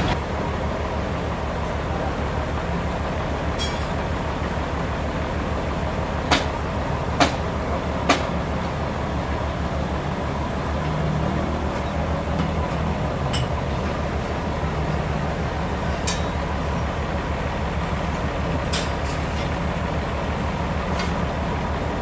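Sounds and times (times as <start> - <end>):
heavy machinery droning: 0.0 - 22.0.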